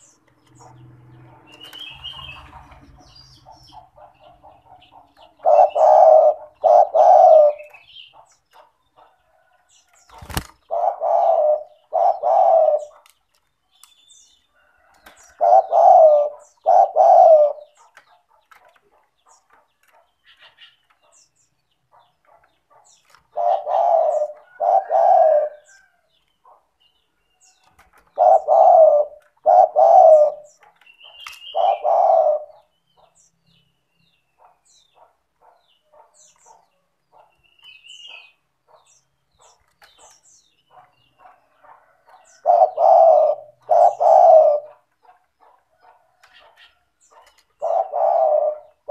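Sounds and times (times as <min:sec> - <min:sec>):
small birds chirping: 0:00.0 - 0:48.9
dove cooing: 0:01.5 - 0:09.6, 0:10.2 - 0:13.2, 0:14.6 - 0:18.2, 0:21.9 - 0:26.6, 0:27.9 - 0:33.2, 0:40.7 - 0:48.9.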